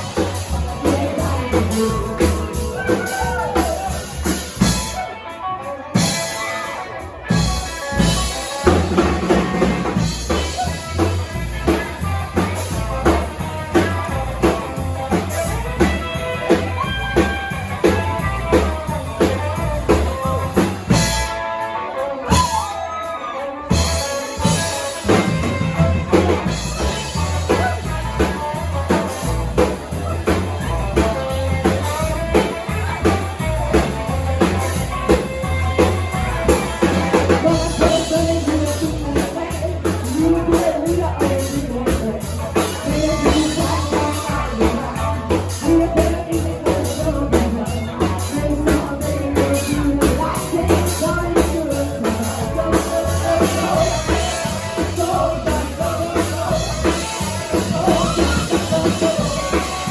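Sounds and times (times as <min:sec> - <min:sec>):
drum-kit beat: 0:00.0 - 0:05.1, 0:07.3 - 0:21.5, 0:23.7 - 0:59.9
bass and guitar: 0:00.0 - 0:59.9
person singing: 0:00.0 - 0:59.9.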